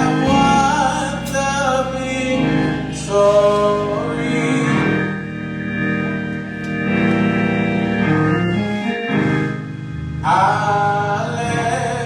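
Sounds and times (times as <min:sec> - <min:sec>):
person singing: 0:00.0 - 0:05.3
organ playing sustained chords: 0:00.0 - 0:12.0.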